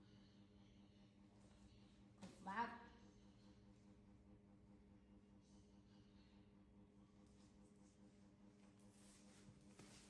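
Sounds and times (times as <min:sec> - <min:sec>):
faint electrical hum: 0:00.0 - 0:10.0
soft rustle: 0:07.3 - 0:10.0.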